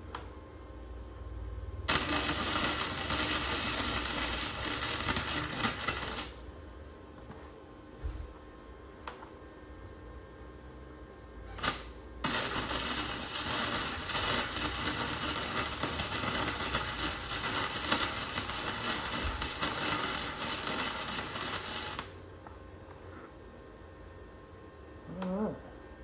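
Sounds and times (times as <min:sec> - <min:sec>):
welding arc crackling: 0:01.9 - 0:06.5, 0:11.6 - 0:22.2.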